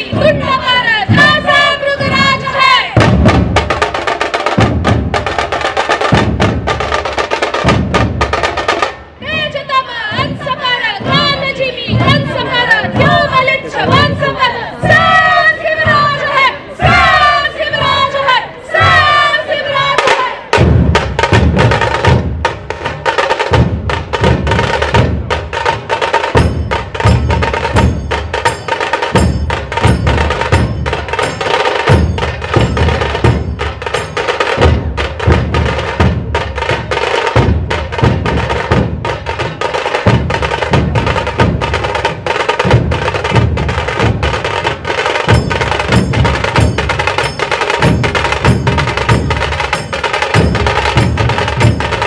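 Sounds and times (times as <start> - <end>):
deep drum beats: 0.0 - 52.0
fast sharp stick drumming: 20.0 - 52.0.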